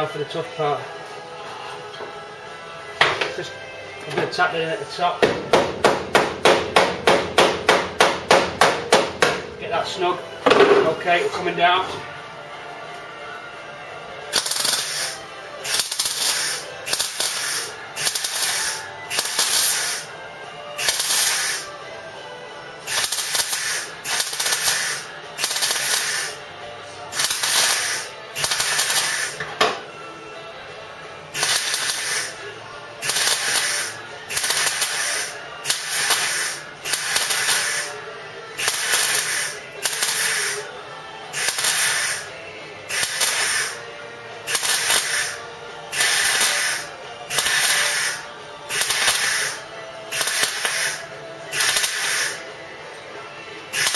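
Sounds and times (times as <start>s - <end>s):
welder crackling: 14.3s - 20.1s, 20.8s - 21.7s, 22.9s - 26.4s, 27.1s - 29.5s, 31.3s - 38.0s, 38.6s - 40.7s, 41.3s - 43.8s, 44.5s - 52.5s.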